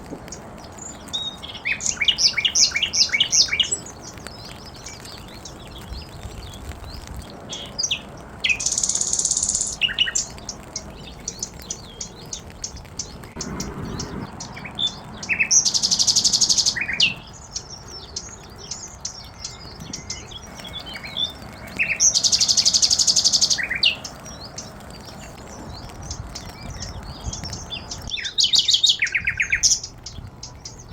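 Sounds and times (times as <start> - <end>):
birds chirping: 0.0 - 30.9
loud rapid buzzy bird trill: 7.5 - 30.9.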